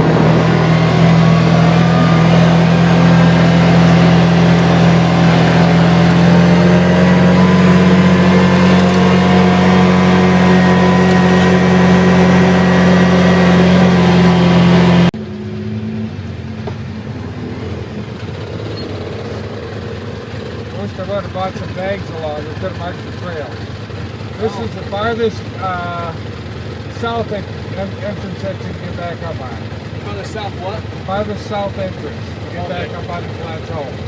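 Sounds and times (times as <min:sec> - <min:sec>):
atv engine running: 0:00.0 - 0:34.0
road and wind noise: 0:00.0 - 0:34.0.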